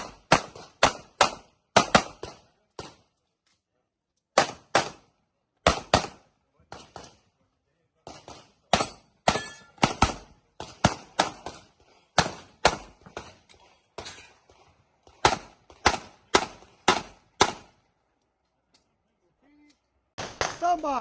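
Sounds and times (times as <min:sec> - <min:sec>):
rapid handgun shots: 0:00.0 - 0:03.0, 0:04.4 - 0:07.3, 0:08.0 - 0:17.8, 0:20.2 - 0:20.6.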